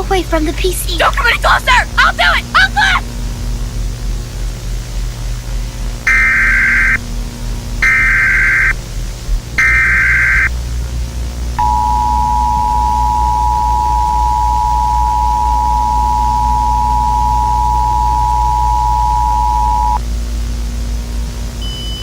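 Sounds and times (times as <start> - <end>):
low hum and hiss: 0.0 - 22.0
two-tone alert signal: 6.1 - 7.0, 7.8 - 8.8, 9.6 - 10.5.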